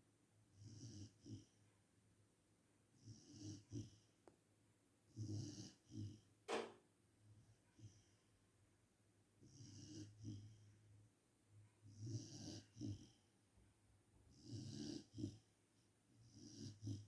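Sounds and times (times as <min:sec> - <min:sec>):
faint snoring: 0:00.6 - 0:01.6, 0:03.0 - 0:04.1, 0:05.1 - 0:06.3, 0:09.4 - 0:10.6, 0:11.9 - 0:13.3, 0:14.3 - 0:15.5, 0:16.2 - 0:17.0.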